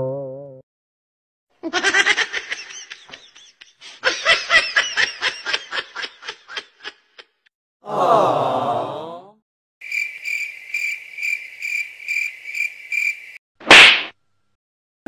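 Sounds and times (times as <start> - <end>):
voice laughing ha-ha: 1.6 - 7.4.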